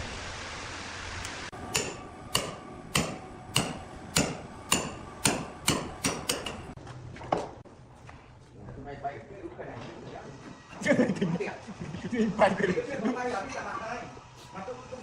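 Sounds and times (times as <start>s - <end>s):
hammer blows with metallic ring: 1.6s - 6.8s.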